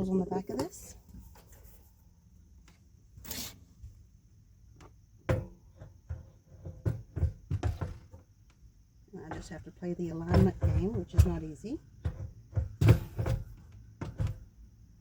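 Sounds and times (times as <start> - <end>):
short scrape: 3.2 - 3.8
light knocks and clunks: 4.8 - 14.8.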